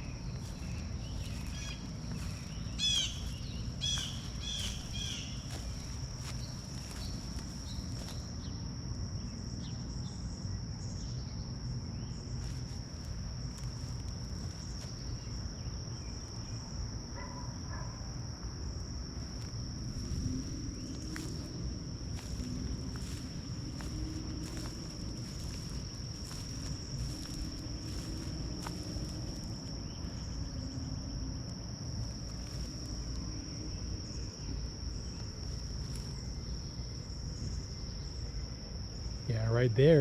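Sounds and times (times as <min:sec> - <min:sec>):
bird chirps: 0:00.0 - 0:05.9
insects singing: 0:00.0 - 0:40.0
low steady rumble: 0:18.6 - 0:39.2.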